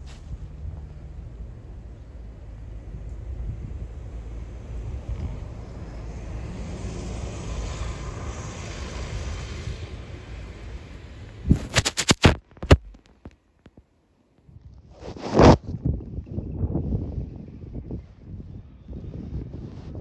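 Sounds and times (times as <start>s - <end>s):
sharp knocks and clicks: 11.5s - 13.8s
wind buffeting microphone: 14.5s - 20.0s.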